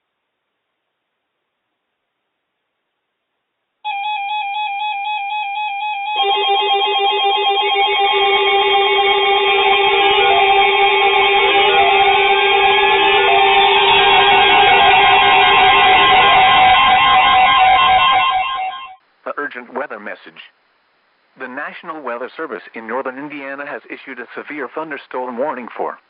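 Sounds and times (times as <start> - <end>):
beeping alarm tones: 3.9 - 19.0
warbling alarm tone: 3.9 - 19.0.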